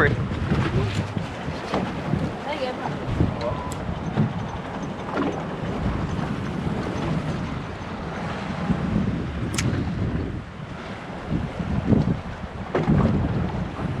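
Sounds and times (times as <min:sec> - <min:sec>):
wind buffeting microphone: 0:00.0 - 0:14.0
sharp click: 0:09.5 - 0:09.8.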